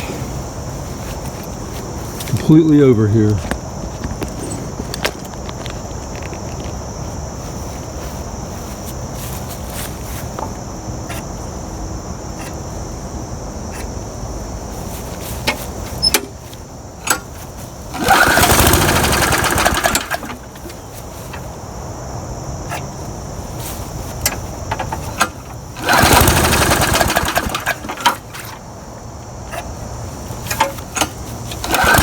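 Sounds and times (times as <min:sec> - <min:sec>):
mower engine cranking and firing: 0:02.1 - 0:06.8, 0:15.3 - 0:21.5, 0:24.1 - 0:28.7, 0:29.5 - 0:32.0
pull-start clicks: 0:18.0 - 0:20.4, 0:24.3 - 0:28.5, 0:30.5 - 0:32.0.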